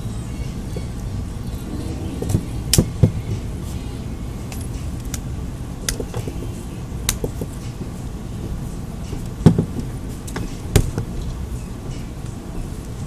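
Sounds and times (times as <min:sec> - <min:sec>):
steady low hum: 0:00.0 - 0:09.1.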